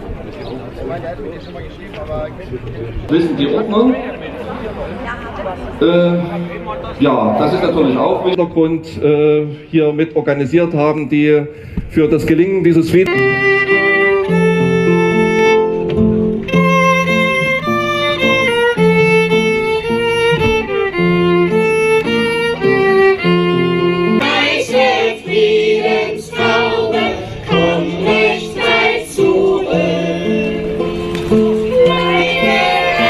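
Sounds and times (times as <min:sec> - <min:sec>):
melody of held notes: 0:13.1 - 0:33.0.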